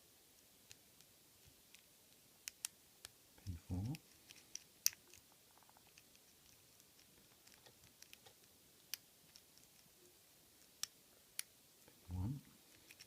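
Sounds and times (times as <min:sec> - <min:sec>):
lock pick clicking and scratching: 0:04.1 - 0:05.3.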